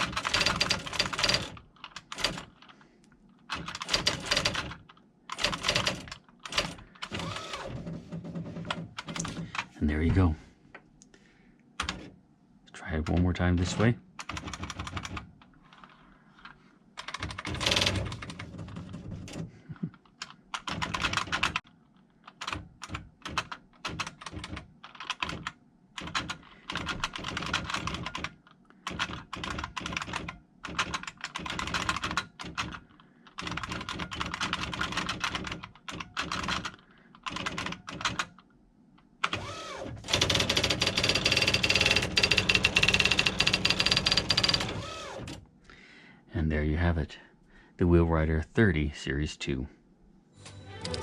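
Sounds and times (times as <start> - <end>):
typewriter typing: 0.0 - 2.7, 3.5 - 9.6, 13.1 - 15.3, 17.0 - 19.4, 20.3 - 21.6, 22.3 - 38.4, 39.2 - 45.4.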